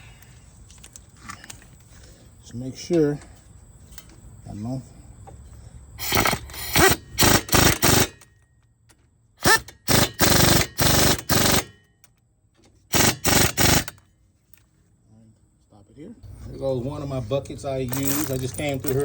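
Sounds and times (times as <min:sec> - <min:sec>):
bolts rattling in metal bucket: 0:17.9 - 0:19.0.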